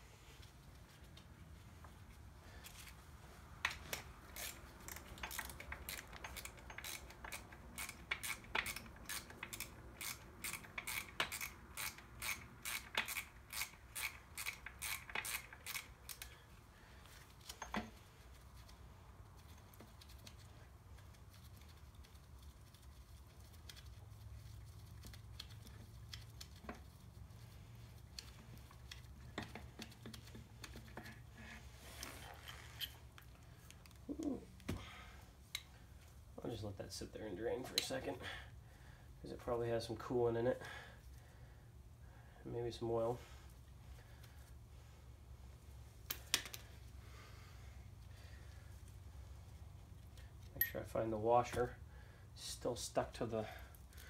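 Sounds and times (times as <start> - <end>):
ratchet wrench clicking: 3.7 - 16.3
light metal clinks: 50.5 - 51.0.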